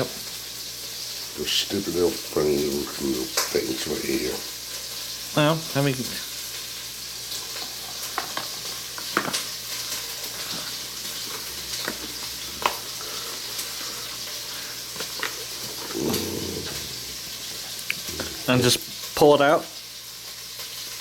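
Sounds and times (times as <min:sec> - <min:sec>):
steady hiss: 0:00.0 - 0:21.0
packaging crinkling: 0:07.4 - 0:18.5.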